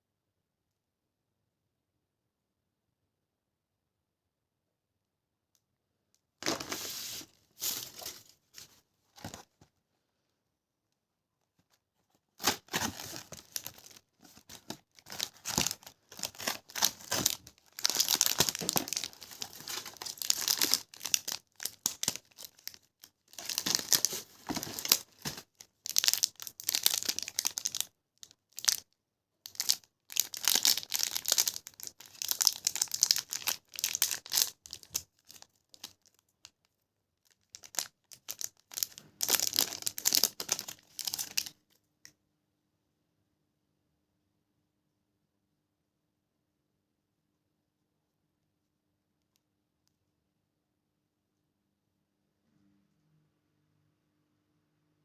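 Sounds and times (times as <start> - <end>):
sweet wrapper tearing and crinkling: 12.4 - 28.8, 29.5 - 36.2, 37.3 - 41.6.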